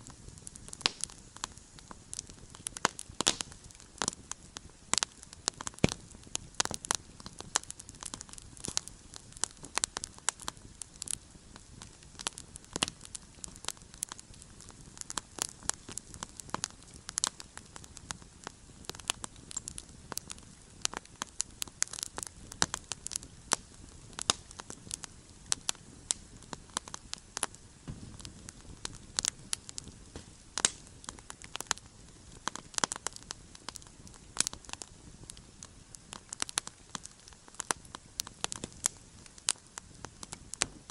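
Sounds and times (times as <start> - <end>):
campfire crackling: 0.0 - 40.9
low hiss: 0.0 - 40.9.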